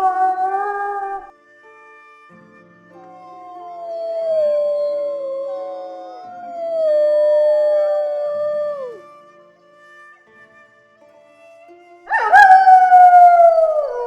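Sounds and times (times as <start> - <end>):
wolves howling: 0.0 - 1.3, 3.0 - 9.1, 12.1 - 14.0.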